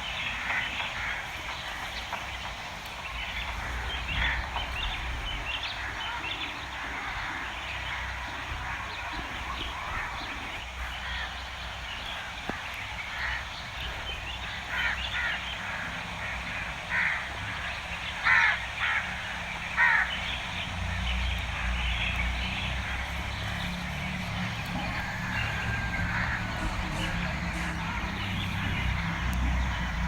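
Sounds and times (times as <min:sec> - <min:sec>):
low outdoor rumble: 0:00.0 - 0:30.0.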